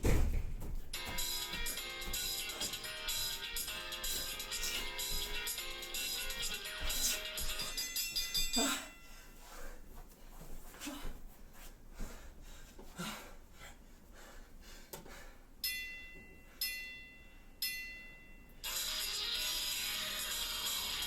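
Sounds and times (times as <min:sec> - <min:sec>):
upbeat music: 0:01.0 - 0:08.6, 0:18.6 - 0:21.0.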